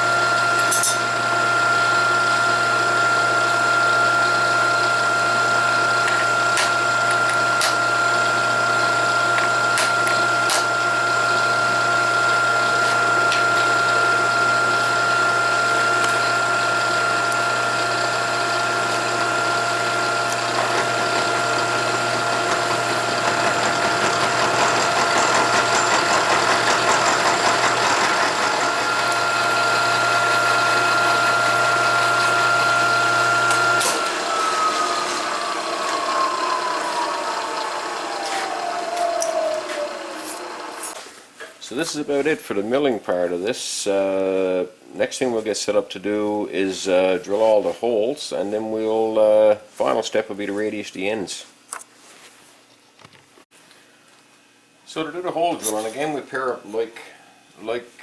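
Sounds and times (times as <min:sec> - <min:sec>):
milling machine whine: 0:00.0 - 0:41.0.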